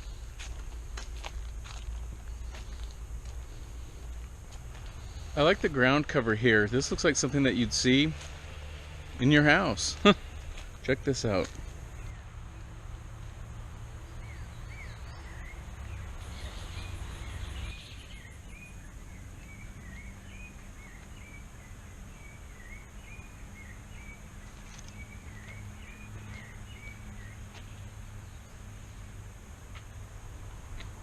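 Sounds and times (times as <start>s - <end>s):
high insect drone: 0.0s - 31.0s
bird chirping: 4.9s - 12.8s, 14.0s - 29.1s.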